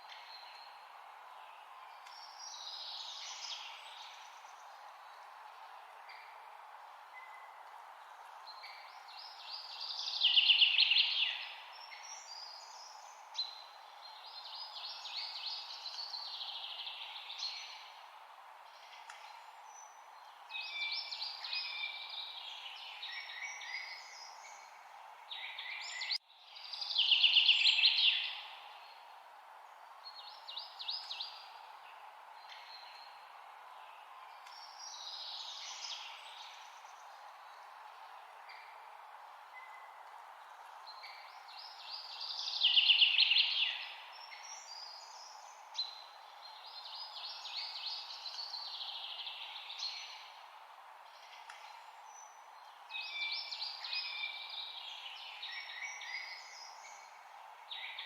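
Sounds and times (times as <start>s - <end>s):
low background hiss: 0.0s - 58.0s
songbird chirping: 0.0s - 58.0s.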